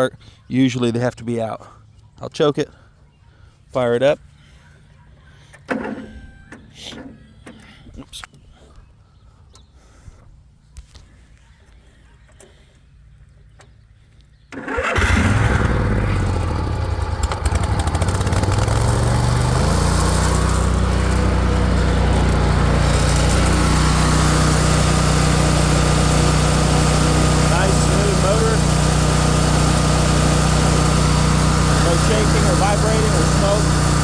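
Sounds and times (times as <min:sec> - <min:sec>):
mower engine starting and running: 0:14.5 - 0:34.0.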